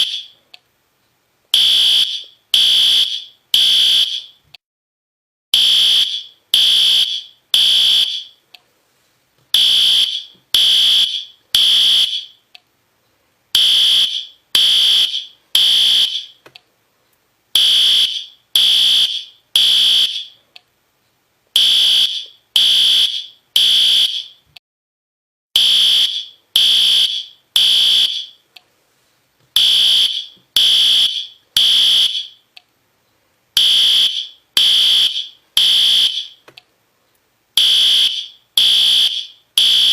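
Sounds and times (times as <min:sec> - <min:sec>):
fire alarm horn blasts: 0:01.6 - 0:04.4, 0:05.6 - 0:08.4, 0:09.6 - 0:12.4, 0:13.6 - 0:16.4, 0:17.6 - 0:20.4, 0:21.6 - 0:24.4, 0:25.6 - 0:28.4, 0:29.6 - 0:32.4, 0:33.6 - 0:36.4, 0:37.6 - 0:39.9.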